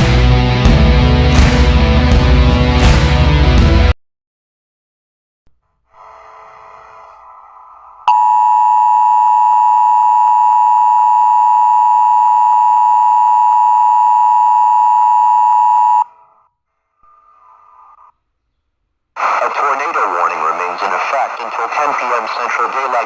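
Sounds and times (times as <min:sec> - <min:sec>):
two-pitch alarm tone: 0:08.0 - 0:16.2.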